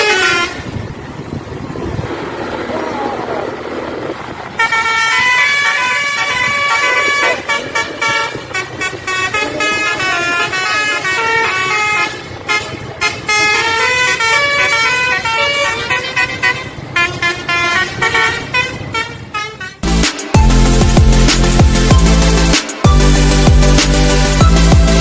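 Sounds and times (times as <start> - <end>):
bus horn playing a melody: 0.0 - 0.9, 4.5 - 20.0
electronic music with heavy bass: 19.8 - 25.0.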